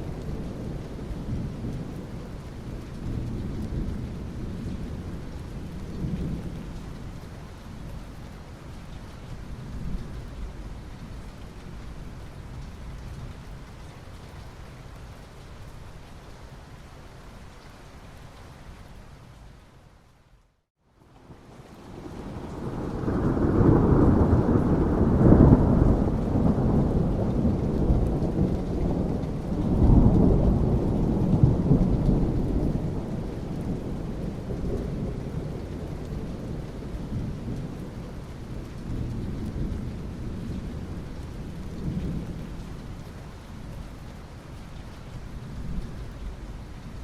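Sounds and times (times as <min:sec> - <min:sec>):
steady rain: 0:00.0 - 0:47.0
thunder rumbling: 0:21.8 - 0:42.7.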